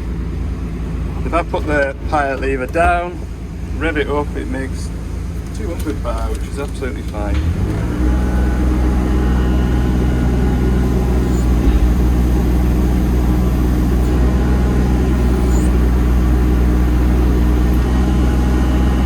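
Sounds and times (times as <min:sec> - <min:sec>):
diesel engine at high revs: 0:03.2 - 0:19.0.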